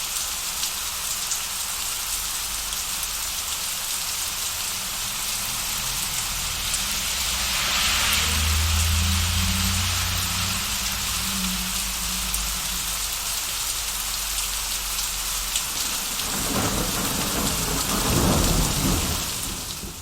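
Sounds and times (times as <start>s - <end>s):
heavy rain hissing: 0.0s - 20.0s
distant thunder rumble: 15.6s - 20.0s.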